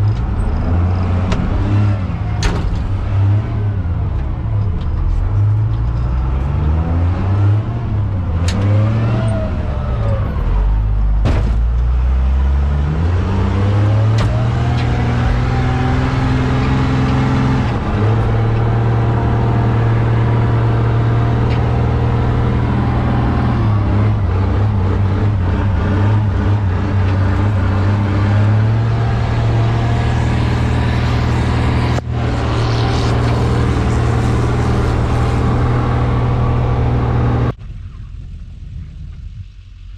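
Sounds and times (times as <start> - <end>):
loud diesel engine revving: 12.0 - 37.6.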